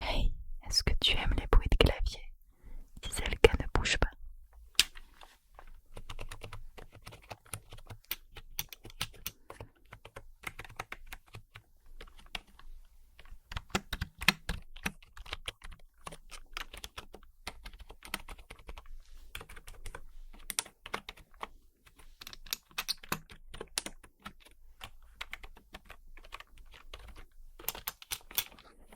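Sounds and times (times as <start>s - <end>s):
typing on computer keyboard: 5.9s - 12.6s, 13.2s - 28.6s.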